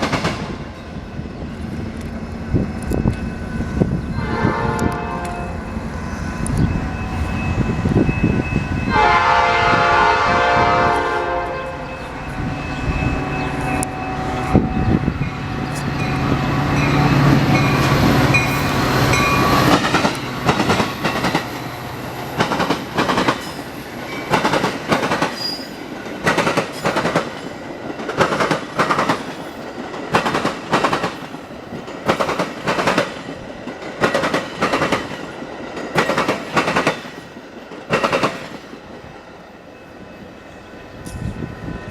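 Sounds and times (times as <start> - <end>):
locomotive engine rumbling: 0.0 - 23.3
train air horn: 4.2 - 5.6, 8.9 - 12.0
wheels clacking over rail joints: 12.9 - 38.9.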